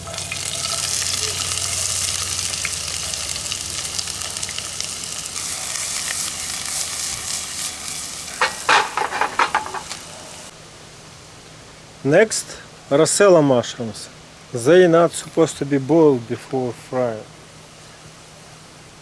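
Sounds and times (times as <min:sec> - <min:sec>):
onion sizzling in a pan: 0:00.0 - 0:10.5.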